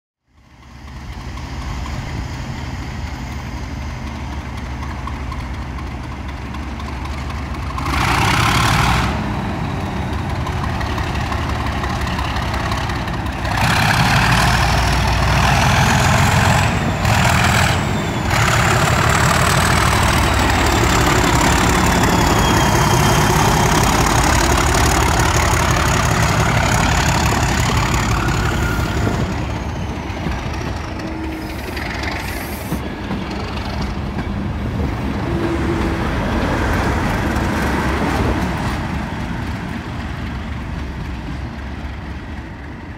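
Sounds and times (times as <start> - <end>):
diesel locomotive engine: 0.2 - 42.9.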